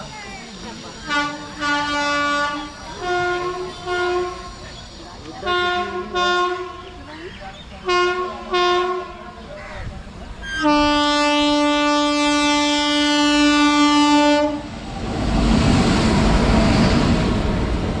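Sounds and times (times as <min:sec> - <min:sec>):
train passing rumble and clatter: 0:00.0 - 0:18.0
locomotive horn blast: 0:01.1 - 0:04.5, 0:05.4 - 0:06.9, 0:07.8 - 0:09.2, 0:10.5 - 0:14.7.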